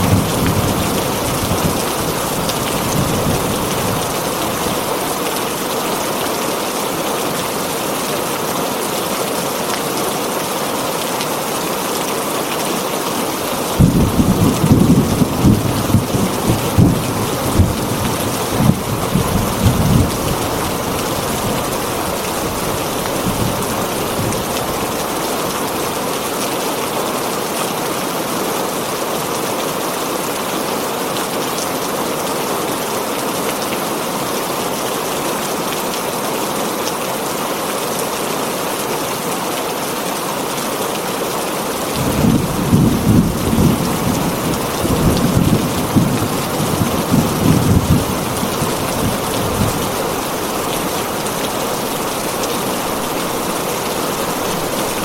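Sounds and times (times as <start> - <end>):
heavy rain on a tin roof: 0.0 - 55.0
thunder rumbling: 13.8 - 20.5, 42.0 - 50.0.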